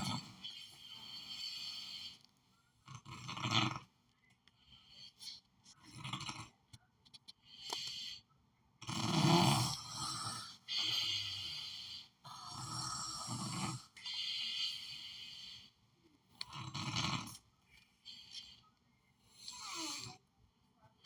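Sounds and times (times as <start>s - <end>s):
person snoring: 0.0s - 2.2s, 8.8s - 15.7s.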